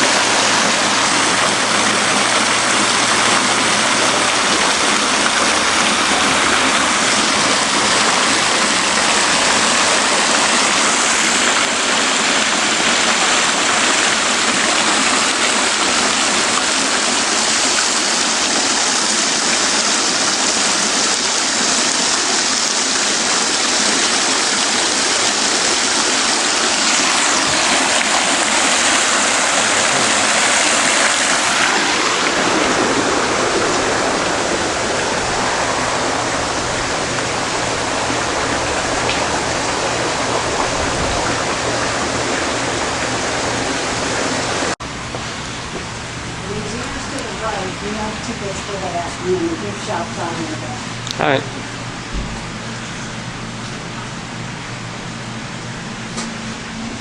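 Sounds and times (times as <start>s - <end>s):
fountain water splashing: 0.0s - 57.0s.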